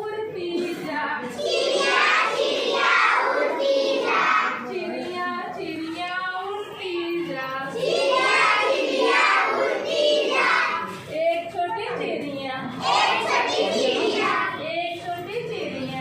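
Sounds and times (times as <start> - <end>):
children singing in chorus: 1.2 - 4.7, 7.7 - 11.0, 12.8 - 14.6.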